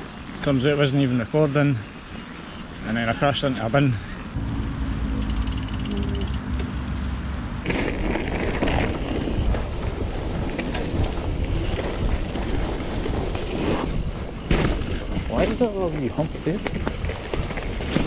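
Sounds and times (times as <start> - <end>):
rough rattling noise: 4.4 - 6.6
bike freehub ratchet buzz: 5.2 - 6.5.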